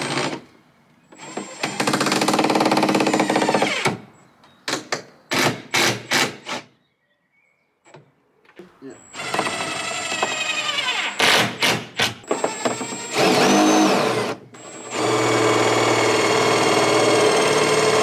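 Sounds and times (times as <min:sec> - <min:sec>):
power tool rattling: 0:09.2 - 0:18.0.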